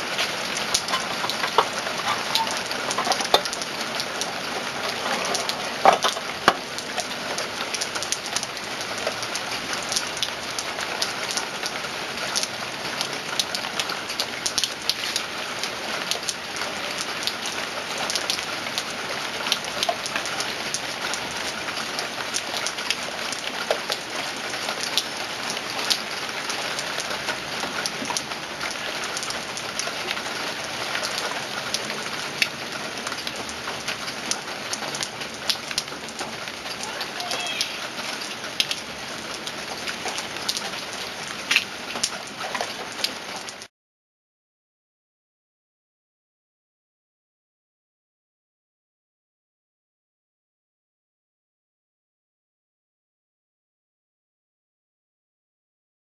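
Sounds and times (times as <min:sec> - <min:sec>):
rain falling: 0:00.0 - 0:43.7.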